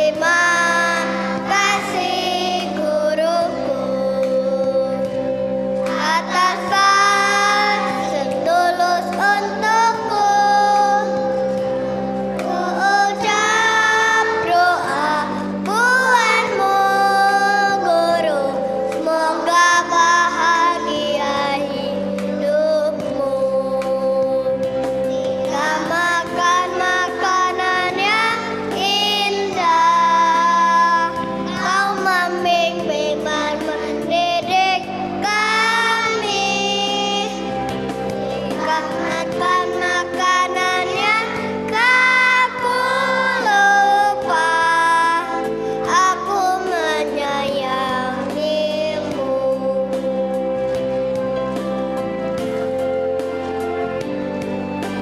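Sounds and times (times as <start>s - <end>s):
children's choir singing: 0.0s - 50.3s
instrumental accompaniment: 0.0s - 55.0s.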